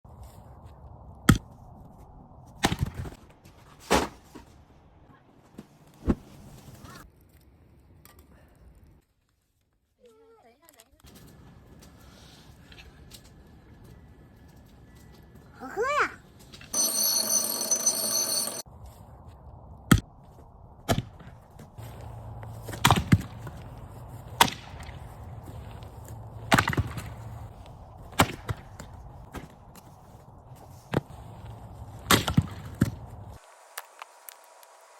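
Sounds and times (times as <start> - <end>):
loud ringing sound: 16.8 - 18.6.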